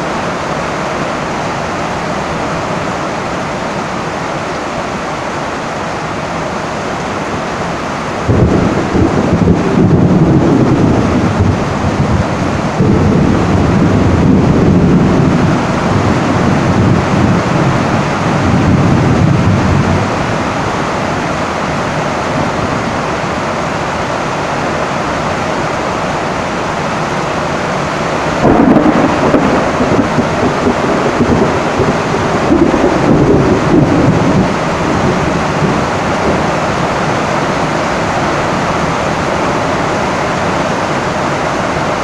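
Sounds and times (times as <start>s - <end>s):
rain on a tin roof: 0.0s - 42.0s
thunder rumbling: 8.2s - 20.6s, 28.3s - 40.2s.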